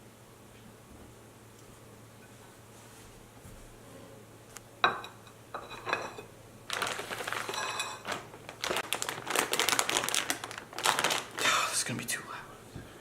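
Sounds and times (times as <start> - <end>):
kitchenware clinking: 4.8 - 6.3, 7.4 - 8.2
crinkling rustle: 6.7 - 11.6.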